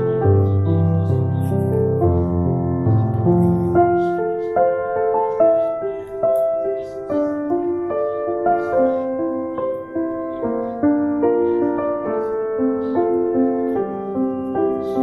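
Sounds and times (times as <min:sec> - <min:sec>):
gentle piano melody: 0:00.0 - 0:15.0.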